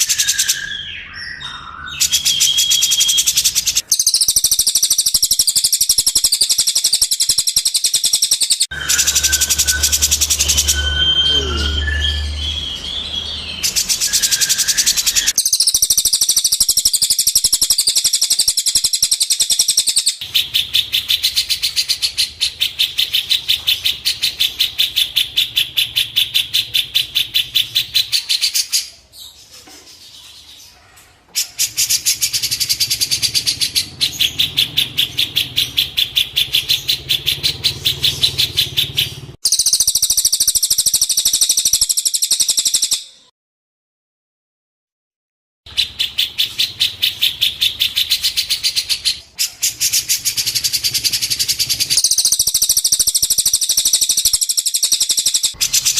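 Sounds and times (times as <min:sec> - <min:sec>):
bird singing high chirps: 0:00.0 - 0:30.8, 0:31.4 - 0:43.3, 0:45.7 - 0:55.9.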